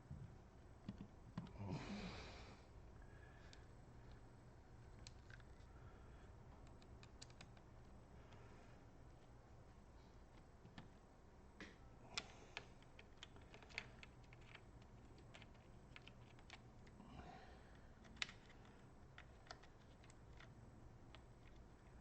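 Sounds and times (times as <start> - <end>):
laptop parts clicking and tapping: 6.6 - 7.7, 11.6 - 17.0, 18.0 - 21.7.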